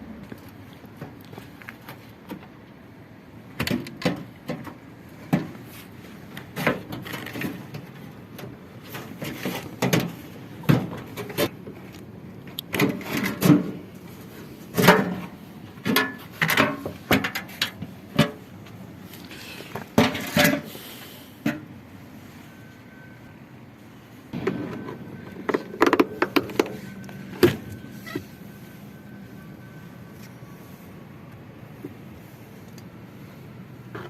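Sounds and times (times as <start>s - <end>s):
tools and parts clattering: 3.6s - 18.5s, 19.1s - 20.8s.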